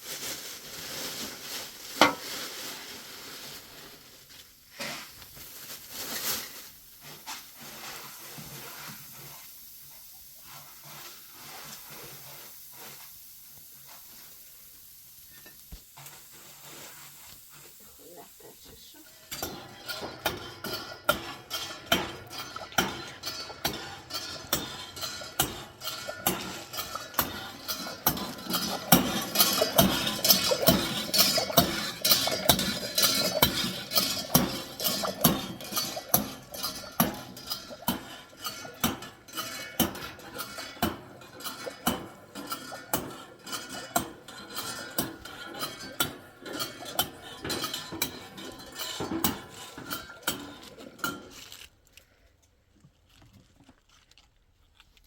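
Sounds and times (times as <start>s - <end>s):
metal utensil scraping a pan: 19.1s - 51.6s.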